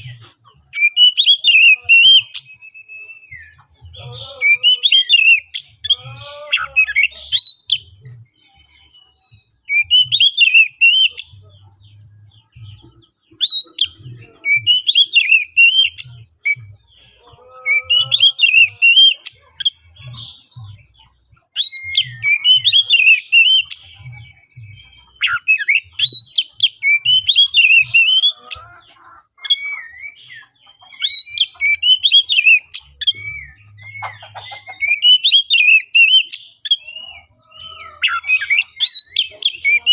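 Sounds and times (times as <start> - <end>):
bird singing whistled phrases: 0.7 - 3.6, 21.6 - 23.9.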